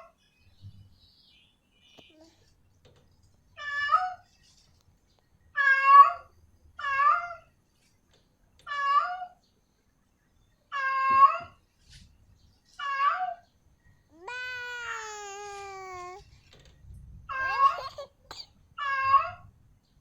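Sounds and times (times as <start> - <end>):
cat meowing: 14.1 - 16.2.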